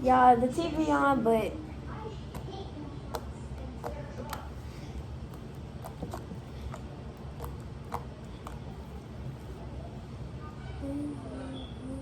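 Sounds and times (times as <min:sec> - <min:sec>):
television playing: 0:00.0 - 0:12.0.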